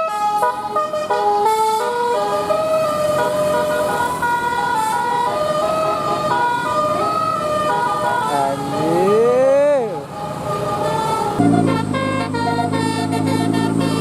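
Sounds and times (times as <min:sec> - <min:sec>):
bus engine rumble: 0:00.0 - 0:14.0
musical air horn melody: 0:11.2 - 0:14.0.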